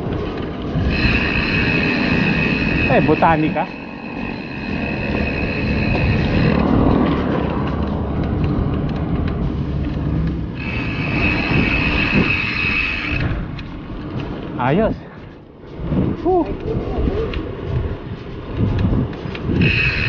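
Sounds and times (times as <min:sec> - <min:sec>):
wind and bicycle road rumble: 0:00.0 - 0:20.0
high steady buzz: 0:00.6 - 0:06.8, 0:10.5 - 0:14.2, 0:19.5 - 0:20.0.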